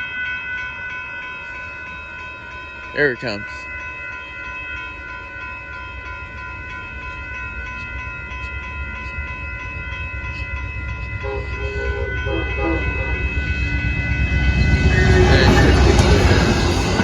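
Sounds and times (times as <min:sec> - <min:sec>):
high-pitched ringing tones: 0:00.0 - 0:17.0
train rumble: 0:06.0 - 0:17.0.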